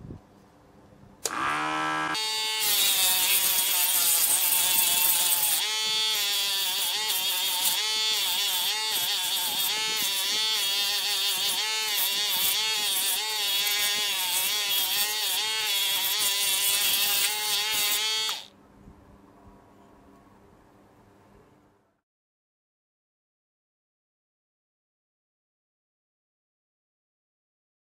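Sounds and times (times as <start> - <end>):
small electric motor whining: 1.2 - 18.5.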